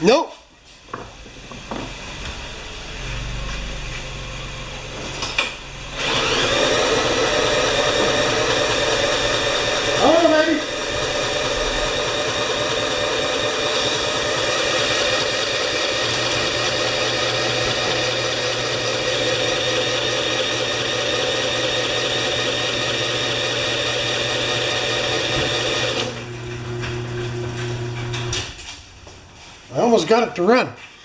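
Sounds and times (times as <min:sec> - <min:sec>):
drill cranking mower engine: 0:05.8 - 0:28.6.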